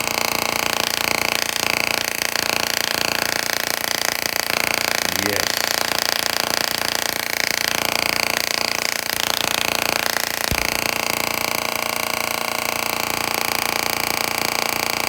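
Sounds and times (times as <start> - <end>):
tesla coil arcs buzzing: 0.8 - 11.9
brief low thump: 10.5 - 11.1.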